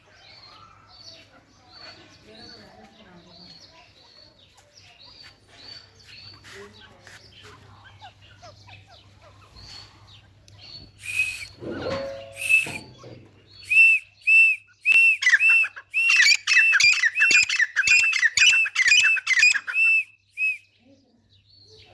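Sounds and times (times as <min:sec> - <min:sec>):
francolin ringing calls: 0:11.0 - 0:14.5, 0:15.1 - 0:20.0
lower falling bird notes: 0:11.0 - 0:20.6.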